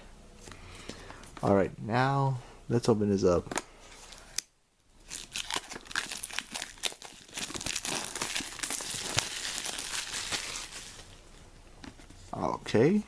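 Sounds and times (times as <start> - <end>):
packaging crinkling and tearing: 5.0 - 11.3.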